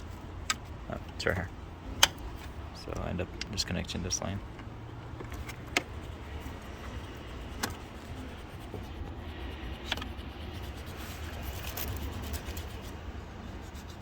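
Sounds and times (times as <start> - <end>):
sharp clicks: 2.0 - 2.3.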